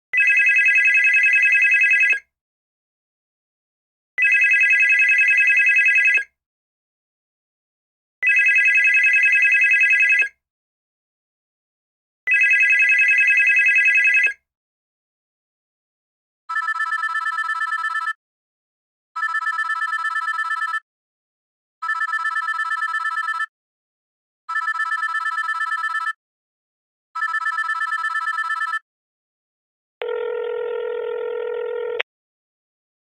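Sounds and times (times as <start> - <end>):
telephone ringing warble: 19.2 - 20.8, 21.8 - 23.5, 24.5 - 26.2, 27.2 - 28.8, 30.0 - 32.0
steady telephone tone: 30.0 - 32.1.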